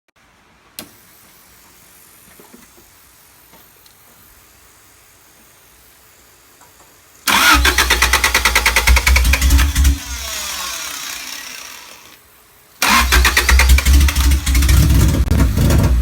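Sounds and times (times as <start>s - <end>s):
quiet hiss: 0.2s - 15.3s
misfiring car engine running: 7.3s - 12.2s, 12.8s - 16.0s.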